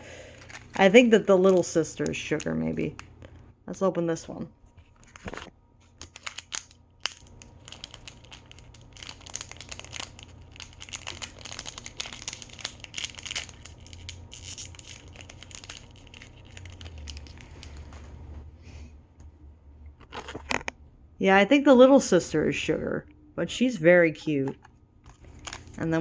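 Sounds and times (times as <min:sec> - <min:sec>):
plastic packaging crinkling and tearing: 0:00.2 - 0:03.4, 0:04.8 - 0:18.0, 0:25.1 - 0:26.0.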